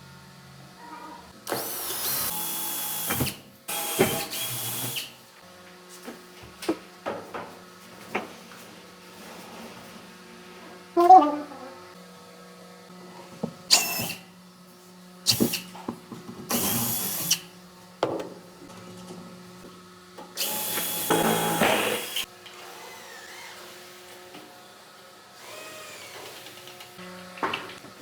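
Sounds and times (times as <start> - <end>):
power tool whining: 20.4 - 24.0.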